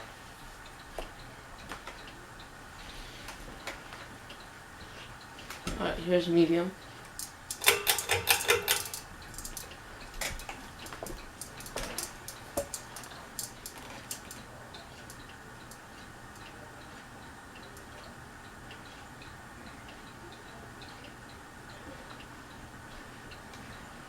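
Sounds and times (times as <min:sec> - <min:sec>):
ceiling fan humming: 0:00.0 - 0:24.0
clock ticking faintly: 0:00.0 - 0:24.0
clicks and ticks: 0:07.0 - 0:18.1.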